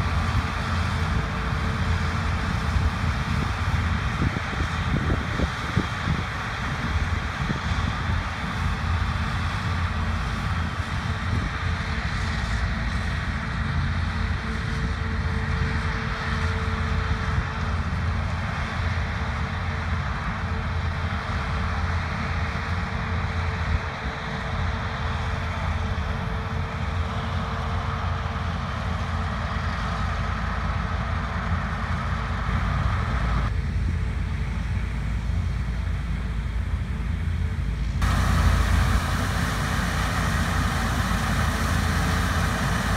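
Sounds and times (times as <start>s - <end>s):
wind on microphone: 0.0s - 8.9s, 38.0s - 42.9s
harvest machinery engine rumble: 0.0s - 42.9s
wide rushing noise: 38.0s - 42.9s.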